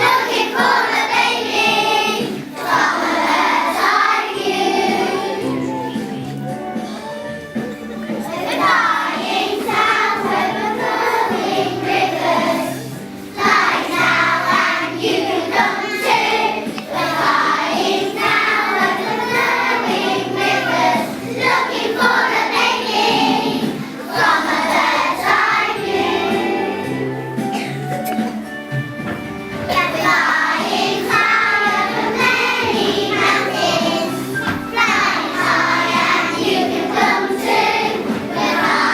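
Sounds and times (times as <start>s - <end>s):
group of voices singing: 0.0s - 5.8s, 8.3s - 27.7s, 29.7s - 38.9s
instrumental accompaniment: 0.0s - 38.9s.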